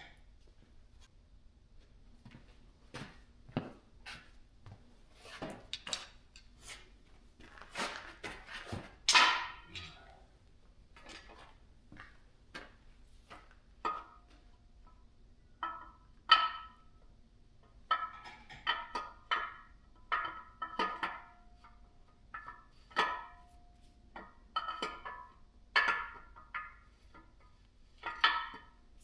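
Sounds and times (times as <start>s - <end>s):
metal clatter: 9.1s - 10.1s
metal parts and tools clinking: 9.1s - 10.1s.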